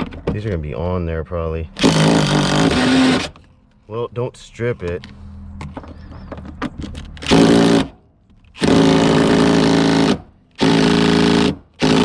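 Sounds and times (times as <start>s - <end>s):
power tool running: 1.8s - 3.4s, 7.2s - 7.9s, 8.6s - 12.0s.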